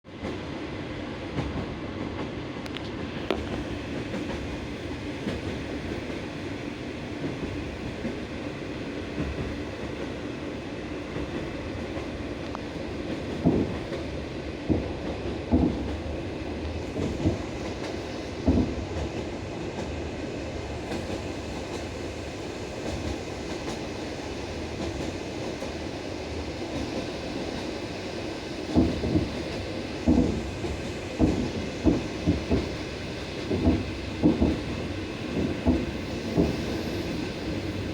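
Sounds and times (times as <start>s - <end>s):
train wheels rumbling on track: 0.1s - 37.9s
wheels clacking over rail joints: 28.7s - 37.9s.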